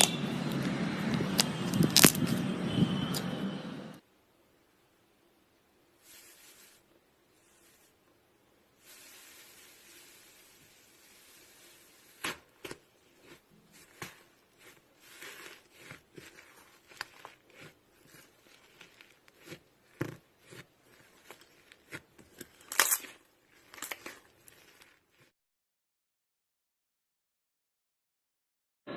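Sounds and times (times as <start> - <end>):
slime clicking and crackling: 1.3 - 2.4, 12.0 - 25.3.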